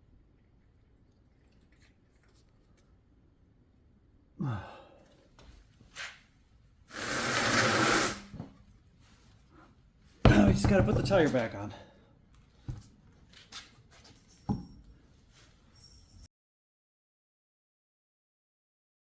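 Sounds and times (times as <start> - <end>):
man grunting: 4.4 - 5.0
breathy hiss: 6.9 - 8.4.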